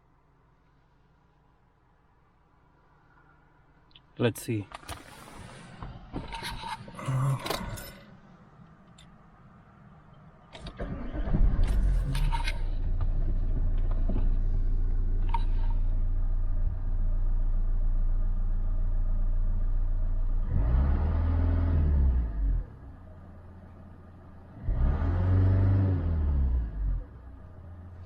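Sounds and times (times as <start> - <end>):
diesel engine starting: 10.5 - 28.0
diesel engine idling: 11.8 - 20.4, 22.3 - 24.6
engine revving: 20.3 - 22.9, 24.5 - 28.0.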